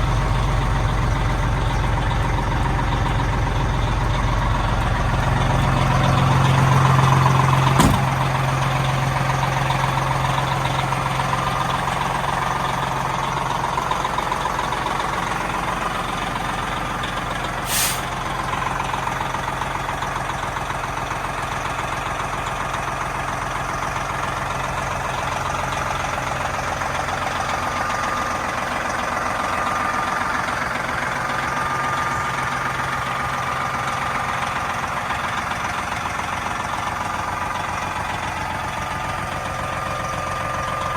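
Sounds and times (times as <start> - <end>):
diesel truck engine idling: 0.0 - 40.9
air hiss: 17.6 - 18.2.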